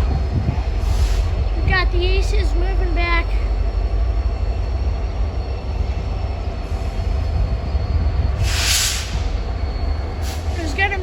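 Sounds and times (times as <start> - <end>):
diesel locomotive rumble: 0.0 - 11.0
air hiss: 8.4 - 9.4.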